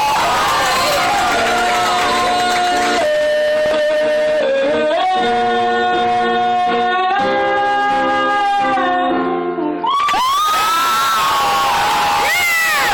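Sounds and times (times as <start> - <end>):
audience whooping and cheering: 0.0 - 3.1, 9.8 - 12.9.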